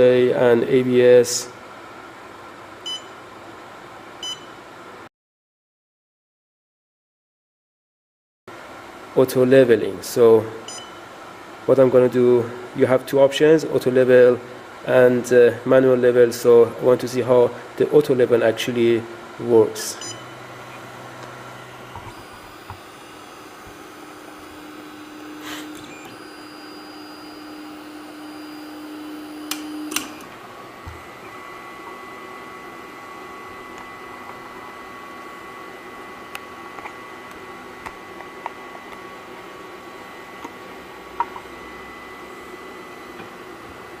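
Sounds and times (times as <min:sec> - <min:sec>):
printer stepper motors humming: 0:19.9 - 0:44.0.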